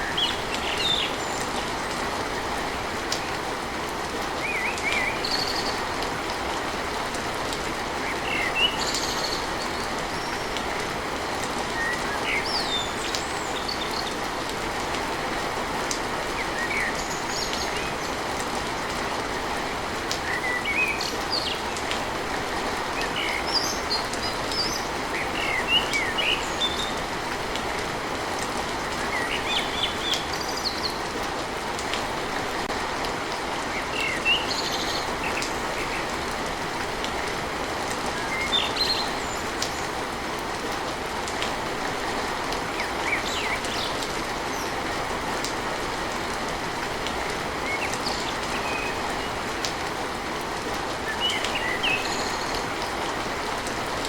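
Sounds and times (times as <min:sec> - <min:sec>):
steady rain hiss: 0:00.0 - 0:54.0
small birds chirping: 0:22.8 - 0:27.1, 0:28.8 - 0:31.2, 0:33.6 - 0:36.2, 0:51.0 - 0:53.0.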